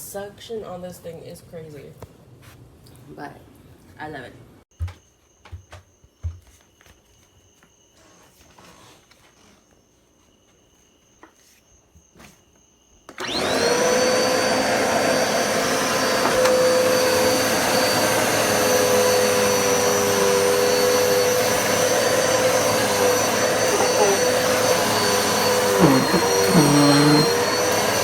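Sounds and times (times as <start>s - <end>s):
vacuum cleaner motor whining: 13.1s - 28.0s.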